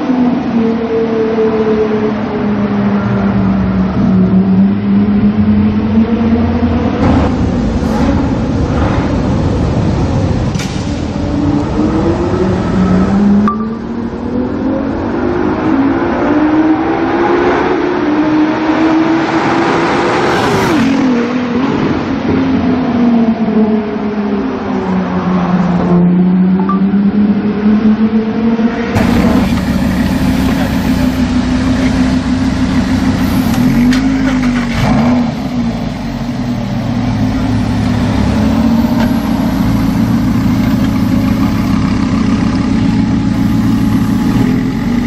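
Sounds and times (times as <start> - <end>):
car engine revving: 26.3 - 45.0.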